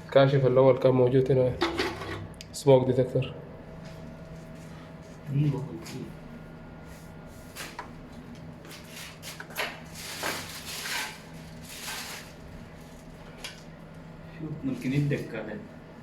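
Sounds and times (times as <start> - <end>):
low electrical hum: 0.0 - 16.0
rubbing and scraping of parts: 1.6 - 2.3, 10.0 - 12.3.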